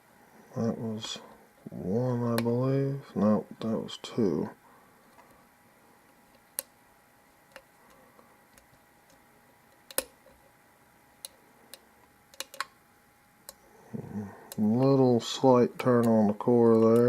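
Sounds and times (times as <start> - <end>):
lock pick metallic clicks: 11.2 - 12.7.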